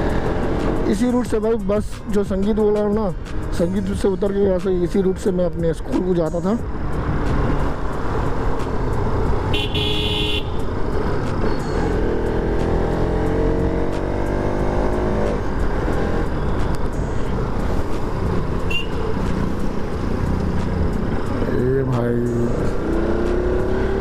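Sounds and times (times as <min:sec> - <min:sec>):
engine and wind rumble: 0:00.0 - 0:24.0
vehicle horn toot: 0:09.5 - 0:10.6, 0:18.7 - 0:19.1
engine accelerating: 0:10.6 - 0:24.0.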